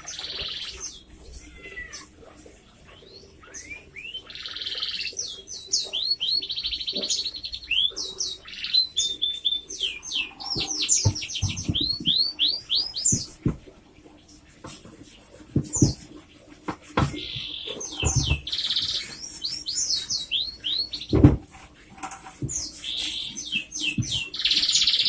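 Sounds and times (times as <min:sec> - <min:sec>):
canary singing: 0:00.0 - 0:02.2, 0:02.9 - 0:13.4, 0:17.0 - 0:21.4, 0:22.4 - 0:25.0.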